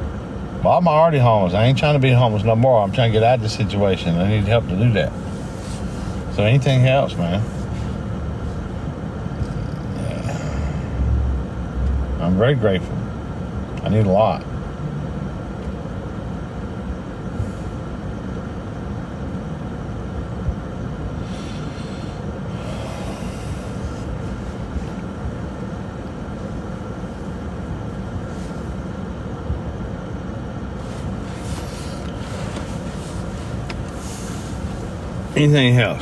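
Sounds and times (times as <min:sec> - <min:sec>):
low rumbling noise: 0:03.1 - 0:15.5, 0:19.5 - 0:29.7.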